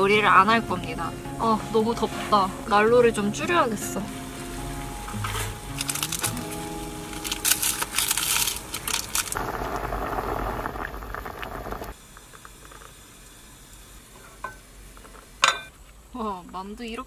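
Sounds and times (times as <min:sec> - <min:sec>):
dumplings sizzling in a frying pan: 0:05.3 - 0:16.4.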